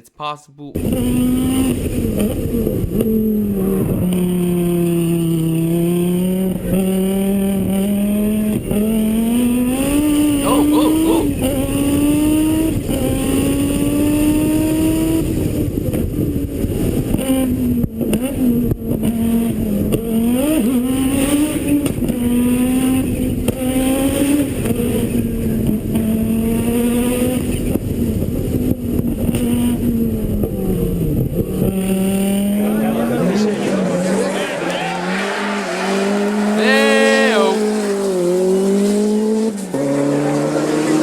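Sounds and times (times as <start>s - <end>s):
car engine revving hard: 0.8s - 41.0s
gravel and road noise: 32.4s - 41.0s.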